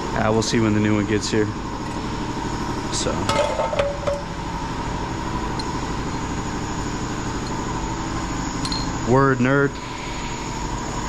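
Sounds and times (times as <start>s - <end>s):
faint steady whine: 0.0s - 11.0s
pulsing mechanical hum: 0.0s - 11.0s
light metallic clinks: 5.5s - 6.3s, 8.6s - 9.0s.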